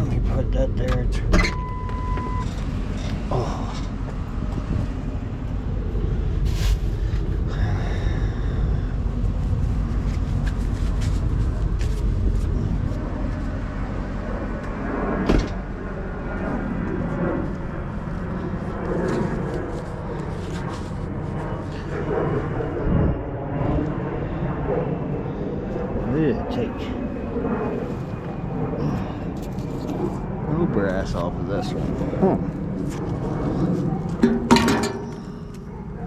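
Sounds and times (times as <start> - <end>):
low vehicle rumble: 0.0 - 26.2.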